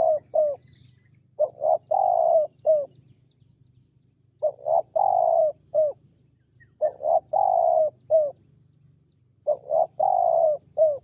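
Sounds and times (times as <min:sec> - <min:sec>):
dove cooing: 0:00.0 - 0:03.0, 0:04.4 - 0:08.5, 0:09.4 - 0:11.0.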